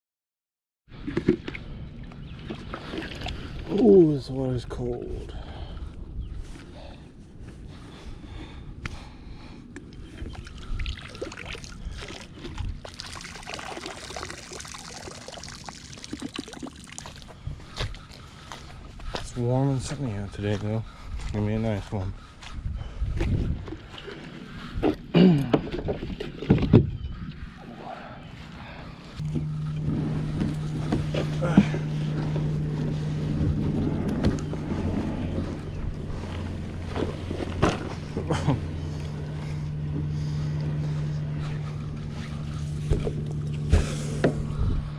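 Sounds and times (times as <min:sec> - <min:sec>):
water splashing and sloshing: 0:00.9 - 0:04.9, 0:09.9 - 0:18.9, 0:23.1 - 0:27.8, 0:28.4 - 0:44.7
boat motor humming: 0:01.0 - 0:19.7, 0:22.1 - 0:44.9
low thumps: 0:29.2 - 0:44.9.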